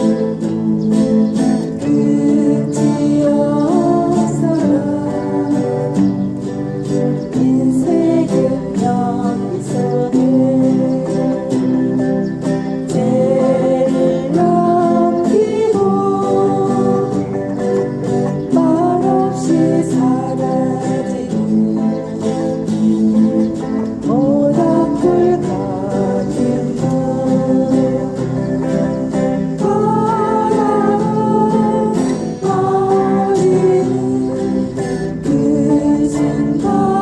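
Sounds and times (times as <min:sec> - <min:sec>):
person singing: 0:00.0 - 0:37.0
strummed acoustic guitar: 0:00.0 - 0:37.0.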